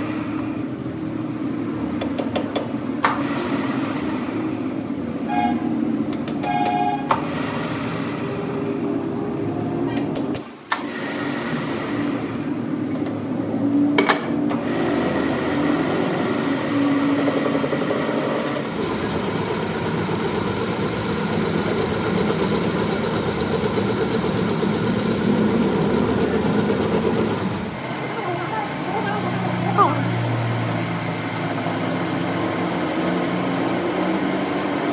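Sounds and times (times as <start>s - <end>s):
metal lathe running: 0.0s - 13.8s, 14.5s - 34.9s
sharp clicks: 0.8s - 3.2s, 6.1s - 7.2s, 8.6s - 10.8s, 12.9s - 13.2s.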